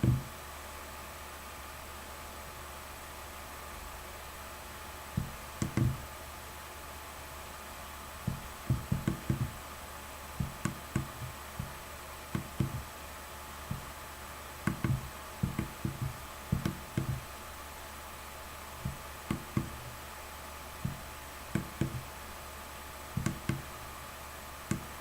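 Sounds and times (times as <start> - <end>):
soft knocks and taps: 0.0 - 0.3, 5.2 - 6.0, 8.3 - 9.6, 10.4 - 11.8, 12.4 - 12.9, 13.7 - 13.9, 14.7 - 17.3, 18.8 - 19.8, 20.8 - 22.1, 23.2 - 23.7
faint hiss and hum: 0.0 - 25.0.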